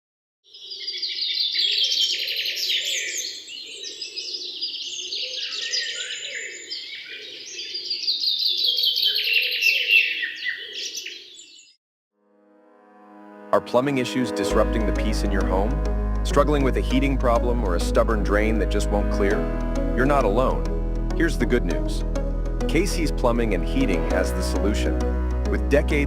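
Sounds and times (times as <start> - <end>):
birds chirping and singing: 0.5 - 11.8.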